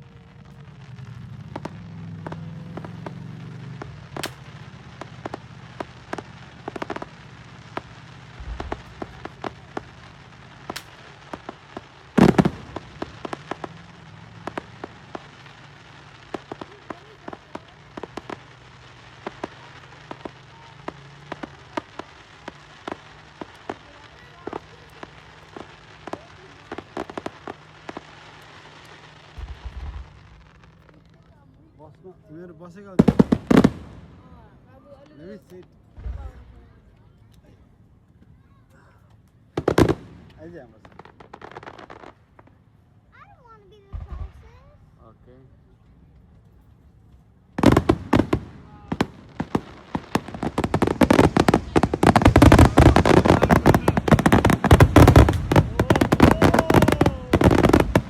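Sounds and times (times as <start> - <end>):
deep firework boom: 0.0 - 18.6, 29.3 - 30.6, 35.9 - 36.9, 47.6 - 58.0
fireworks crackling and popping: 0.0 - 58.0.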